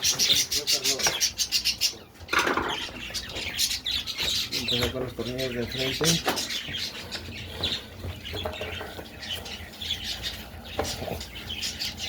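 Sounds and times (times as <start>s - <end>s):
birds chirping and squawking: 0.0s - 12.0s.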